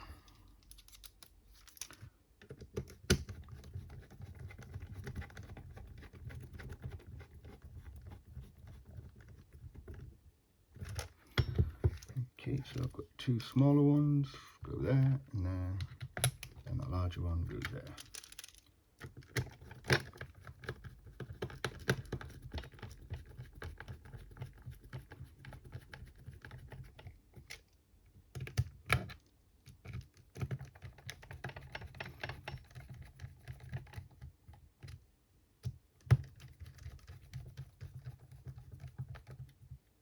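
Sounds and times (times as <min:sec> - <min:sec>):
small parts clicking and tapping: 0:00.2 - 0:05.6, 0:17.5 - 0:25.0, 0:25.6 - 0:35.0.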